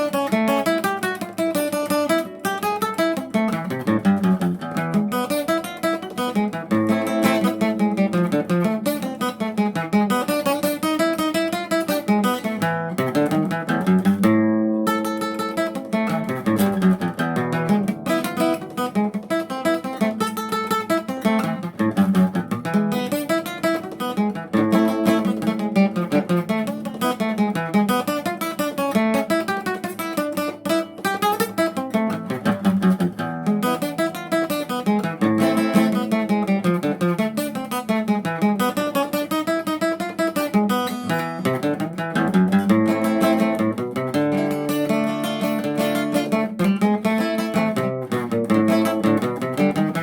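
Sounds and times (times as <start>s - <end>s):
solo acoustic guitar: 0.0s - 50.0s.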